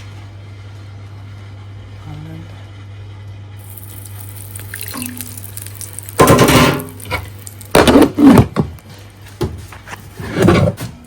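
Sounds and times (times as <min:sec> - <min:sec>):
kitchen items clattering and scraping: 0:06.2 - 0:11.0.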